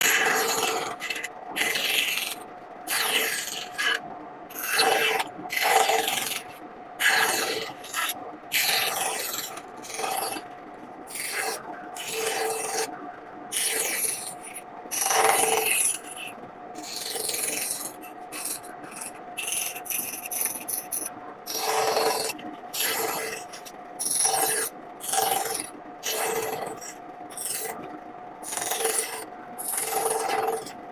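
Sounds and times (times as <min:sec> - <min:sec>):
gouge scraping wood: 0:00.0 - 0:03.9, 0:11.1 - 0:12.9, 0:13.6 - 0:27.8, 0:28.4 - 0:30.7.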